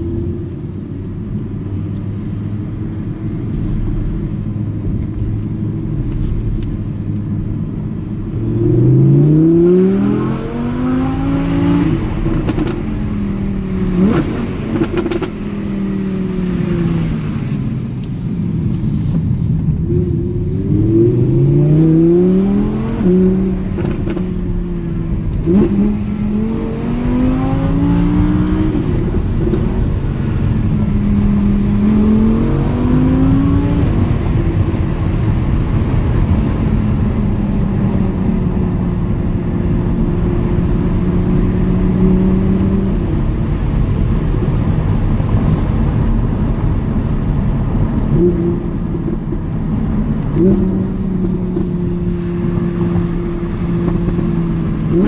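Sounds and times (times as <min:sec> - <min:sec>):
car engine revving: 0:07.4 - 0:55.0
sharp cracks at gear changes: 0:11.9 - 0:13.0, 0:14.0 - 0:15.5, 0:22.8 - 0:24.4.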